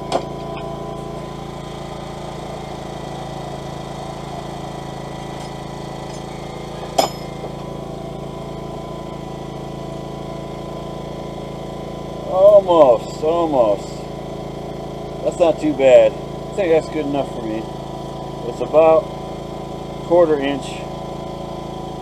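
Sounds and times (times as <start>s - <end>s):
shop machinery motor drone: 0.0s - 22.0s
sharp metallic clink: 7.0s - 7.4s.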